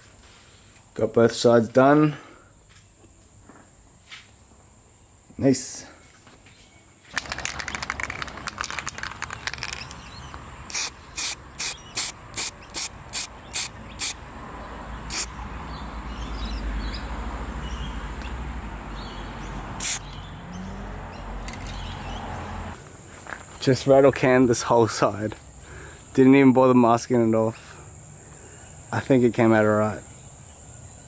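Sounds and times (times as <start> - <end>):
spray can rattling: 7.1 - 10.1, 10.7 - 14.2, 19.8 - 20.0
aerosol spray hissing: 10.7 - 14.2, 15.1 - 15.4, 19.8 - 20.1.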